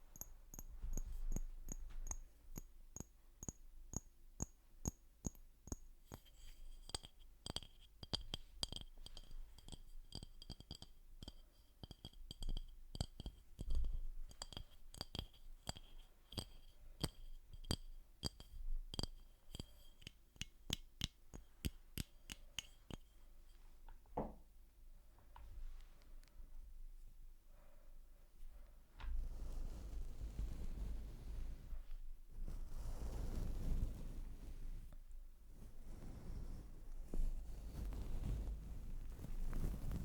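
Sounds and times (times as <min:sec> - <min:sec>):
high clinking ring: 0:00.0 - 0:09.3
tapping on small hard object: 0:00.2 - 0:23.1.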